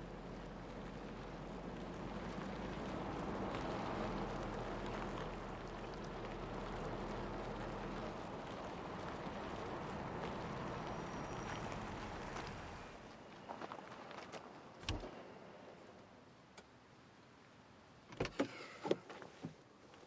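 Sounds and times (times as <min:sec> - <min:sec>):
car engine humming: 0:00.0 - 0:13.1.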